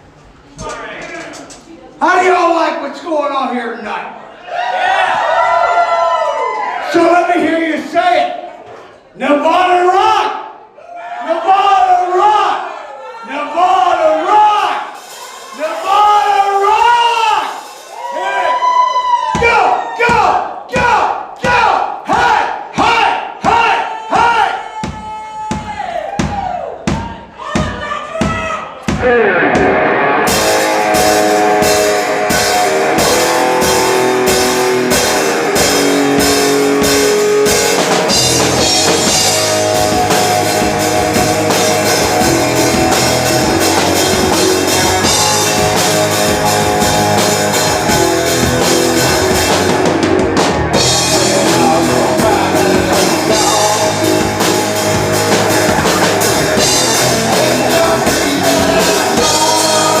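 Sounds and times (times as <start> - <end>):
drum kit beat: 19.1 - 60.0
electric guitars: 29.0 - 60.0.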